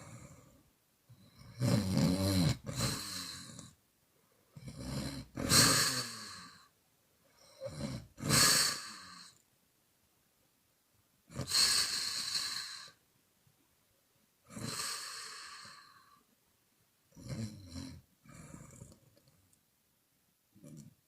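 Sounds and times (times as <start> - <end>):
woman snoring: 0.0 - 3.8, 4.6 - 6.7, 7.4 - 9.4, 11.3 - 13.0, 14.5 - 16.2, 17.2 - 19.0.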